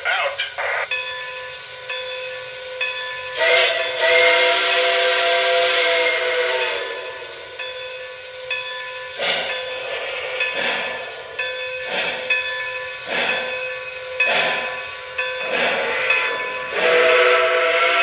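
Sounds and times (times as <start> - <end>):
chime steam whistle blast: 1.0 - 11.2, 11.8 - 18.0.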